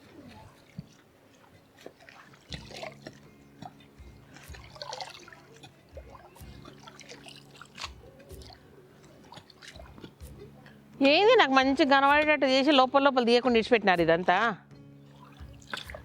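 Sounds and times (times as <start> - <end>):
soil being dug by hand: 0.0 - 10.6.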